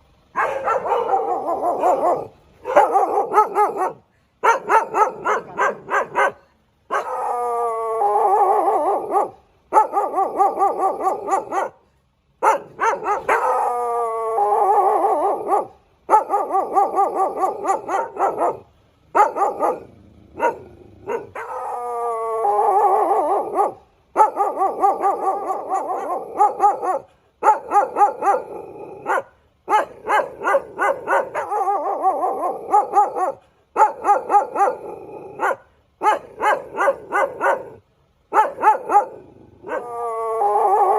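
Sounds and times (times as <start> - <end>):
dog barking and yapping: 0.3 - 7.5, 8.1 - 11.8, 12.4 - 40.9
dog whining: 38.4 - 40.9.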